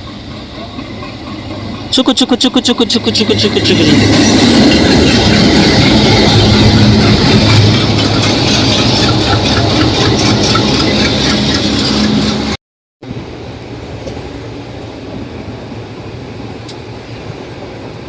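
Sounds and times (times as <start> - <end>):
train clatter: 0.0 - 13.3
train locomotive humming: 0.0 - 18.0.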